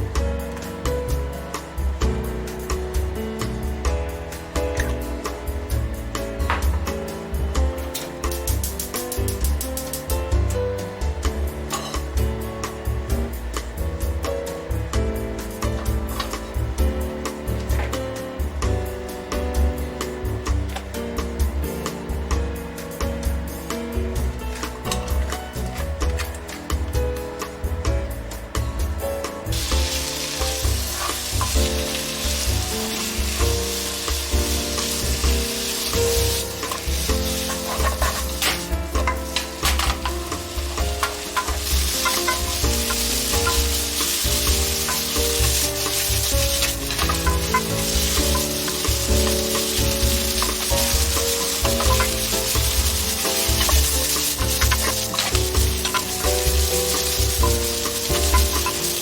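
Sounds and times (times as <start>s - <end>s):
food sizzling in frying pan: 0.0s - 22.0s, 29.4s - 59.0s
background music with bass beat: 0.0s - 59.0s
utensil clicking against pan: 30.2s - 59.0s.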